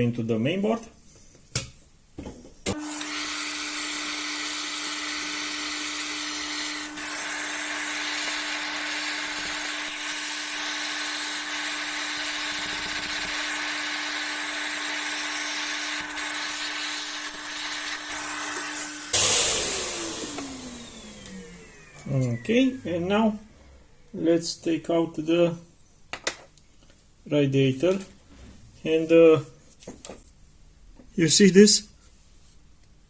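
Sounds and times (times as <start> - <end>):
small electric motor humming: 2.7 - 23.0.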